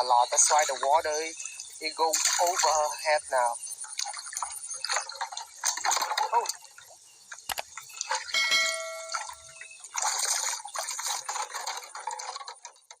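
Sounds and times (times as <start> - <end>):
water splashing and dripping: 0.0 - 13.0
brief ringing tone: 8.4 - 9.6.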